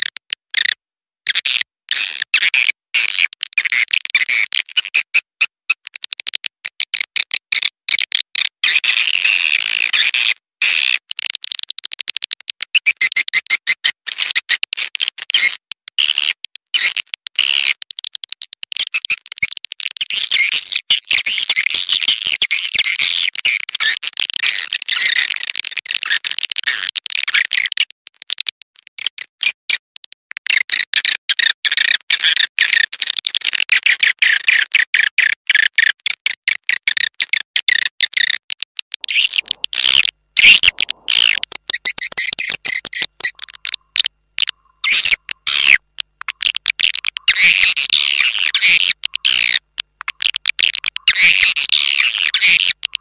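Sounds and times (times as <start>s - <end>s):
swiftlet chirps and twitters: 39.0s - 45.8s.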